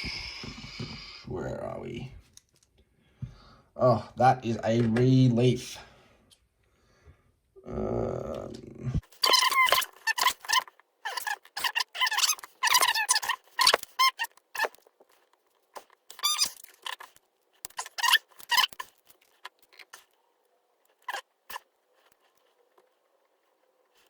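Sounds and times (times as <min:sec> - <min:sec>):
metal lock parts squeaking and clicking: 0:09.1 - 0:15.2, 0:15.8 - 0:20.2, 0:20.8 - 0:23.0.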